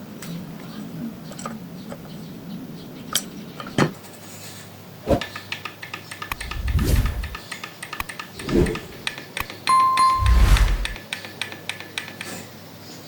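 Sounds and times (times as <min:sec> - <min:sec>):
low rush: 0:06.4 - 0:07.4, 0:08.4 - 0:09.1, 0:09.7 - 0:11.0.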